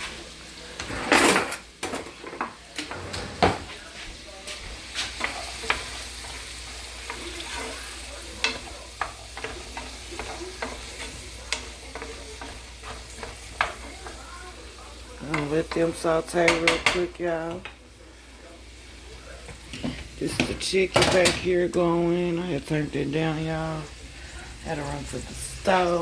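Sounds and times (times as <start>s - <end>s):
vegetables sizzling in pan: 0.0s - 3.0s, 3.6s - 26.0s
utensil knocking against pan: 15.3s - 17.1s.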